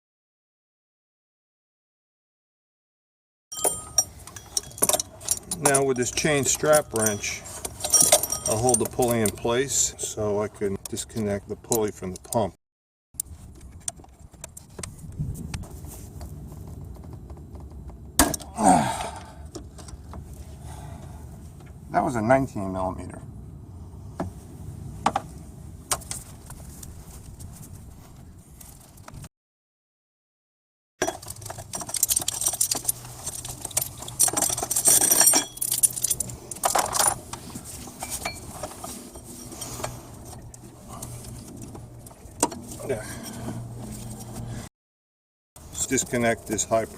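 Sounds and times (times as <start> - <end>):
metal tools clinking and scraping: 3.5 - 9.9, 31.0 - 44.3
metal clatter: 3.6 - 9.4, 31.0 - 39.9
wrenches clicking on metal: 3.6 - 9.6, 31.0 - 37.2.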